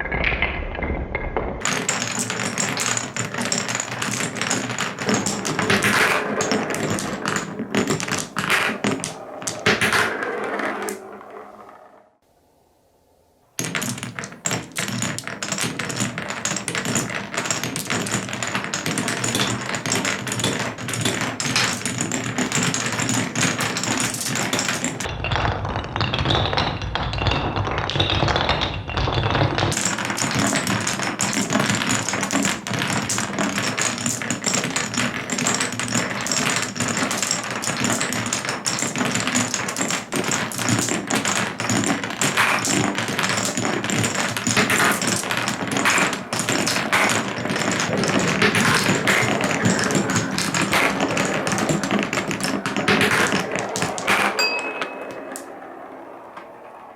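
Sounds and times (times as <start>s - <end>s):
marbles clacking on wooden run: 0.0s - 12.1s, 13.6s - 56.9s.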